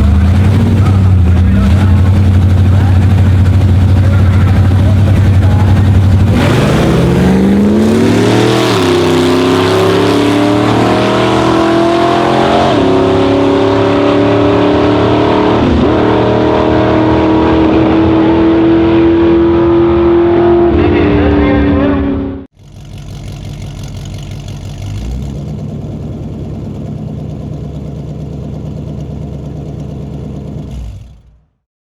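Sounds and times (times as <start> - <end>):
truck engine accelerating: 0.0 - 31.6.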